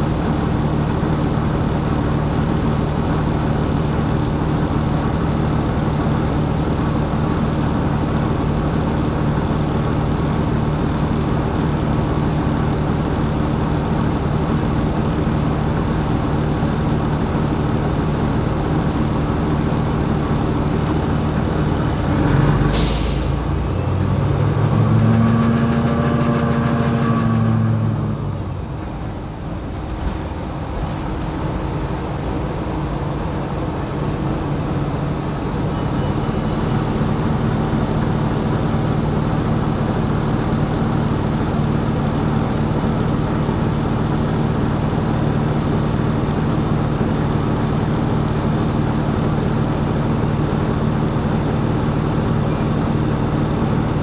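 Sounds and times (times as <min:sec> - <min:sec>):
bus diesel engine running: 0:00.0 - 0:54.0
air brake hiss: 0:22.7 - 0:23.4.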